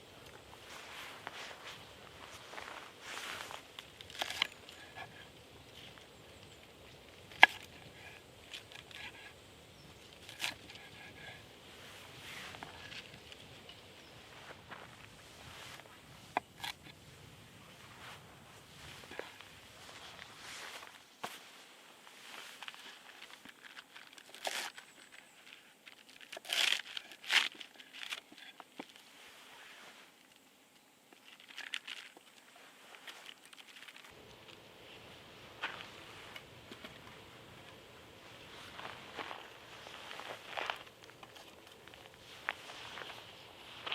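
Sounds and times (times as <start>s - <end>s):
crinkly material tearing: 22.6s - 29.0s, 31.2s - 34.2s.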